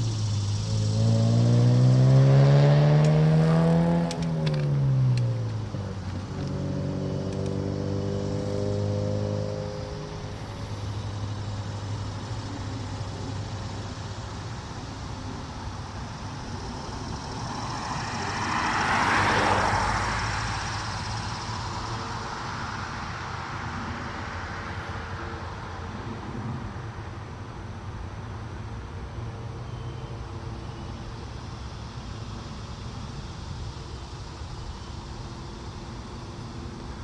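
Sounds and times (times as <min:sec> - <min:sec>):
steady low hum: 0:00.0 - 0:02.4, 0:03.4 - 0:18.6
road vehicle passing by: 0:00.0 - 0:37.0.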